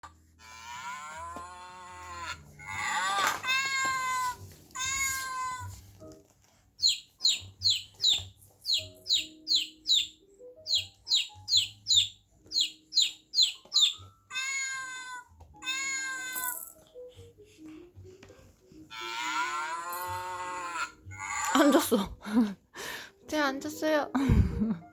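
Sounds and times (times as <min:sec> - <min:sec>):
cat meowing: 0:12.6 - 0:16.7.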